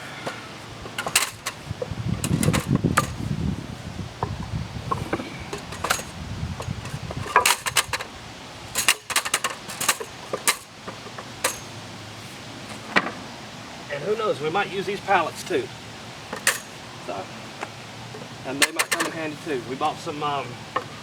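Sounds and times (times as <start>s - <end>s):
wooden boards knocking together: 4.9s - 8.1s.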